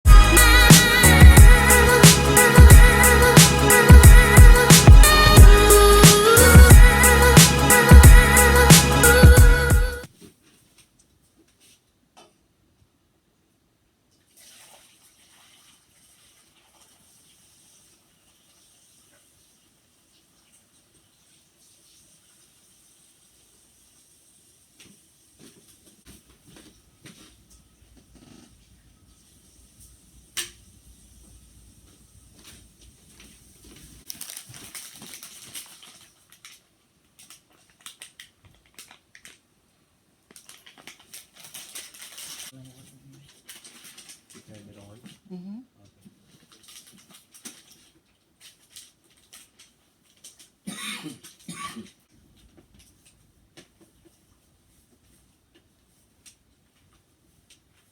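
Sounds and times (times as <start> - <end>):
faint steady hiss: 10.0 - 57.9
rustling crackling noise: 24.9 - 39.5, 40.2 - 45.0.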